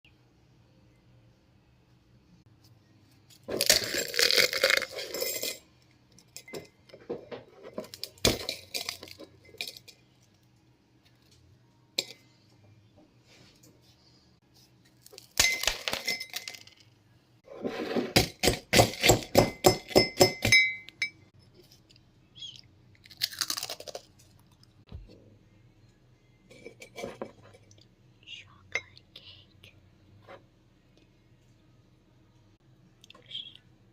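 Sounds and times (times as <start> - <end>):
cookies being crushed: 3.4 - 5.3, 15.0 - 16.7, 18.2 - 20.0, 23.0 - 24.7.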